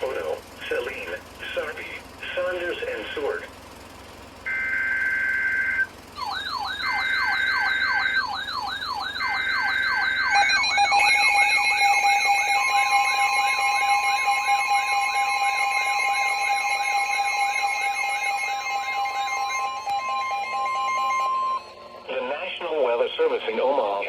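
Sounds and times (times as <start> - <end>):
two-pitch data burst tones: 4.5 - 22.0
swooping siren tone: 4.5 - 22.2
fast electronic beeping: 4.5 - 22.5
steady two-tone attention signal: 4.5 - 22.6.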